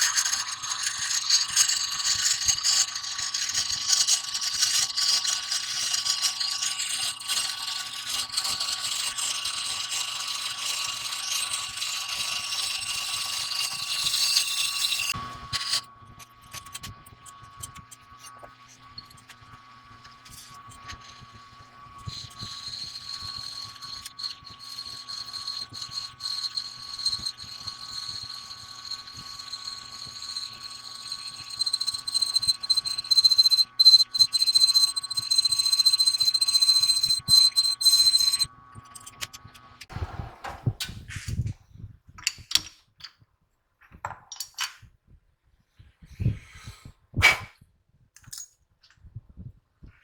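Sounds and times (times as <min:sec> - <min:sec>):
drill cutting brass squealing: 0:00.0 - 0:39.4
machine spindle whine: 0:00.0 - 0:40.8.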